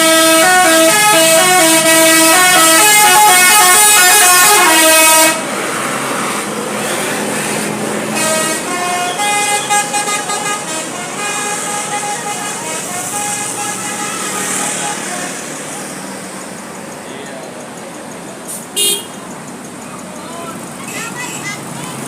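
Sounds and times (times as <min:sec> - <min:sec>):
bus musical horn melody: 0:00.0 - 0:05.6, 0:07.9 - 0:15.8, 0:18.8 - 0:19.3
road noise: 0:00.0 - 0:22.0.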